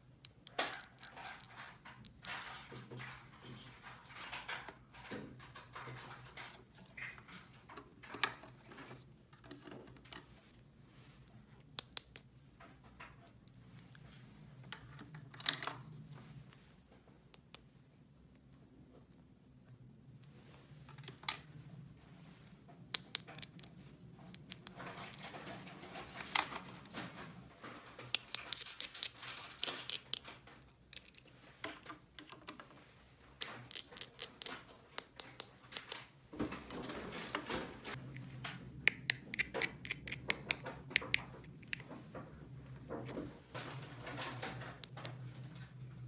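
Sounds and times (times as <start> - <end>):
plastic pieces scraping: 0.3 - 10.3, 23.0 - 32.7, 33.4 - 42.0
plastic toy pieces clicking: 33.4 - 36.0, 38.9 - 41.8.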